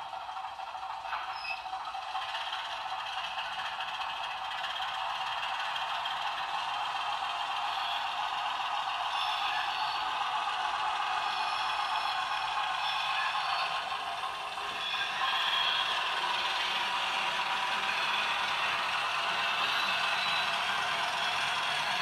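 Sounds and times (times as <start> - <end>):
model train mechanical clatter: 0.0 - 22.0.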